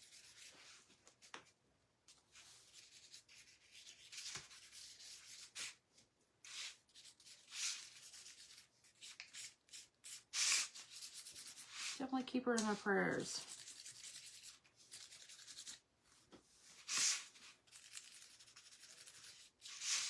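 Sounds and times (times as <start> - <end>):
sandpaper rubbing on wood: 13.4 - 15.8.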